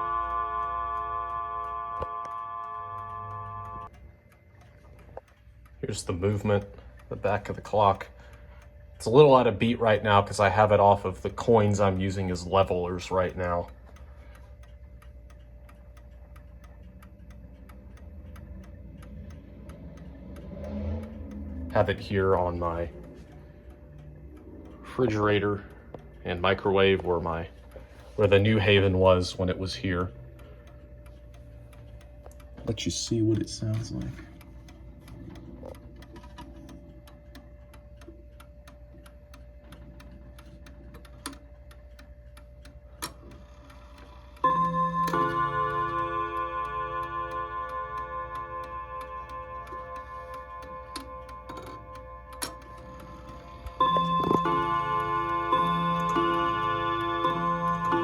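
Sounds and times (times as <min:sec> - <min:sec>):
gong rods ringing: 0:00.0 - 0:03.9, 0:44.5 - 0:58.0
clock clicks: 0:00.0 - 0:58.0
clock ticking: 0:00.0 - 0:58.0.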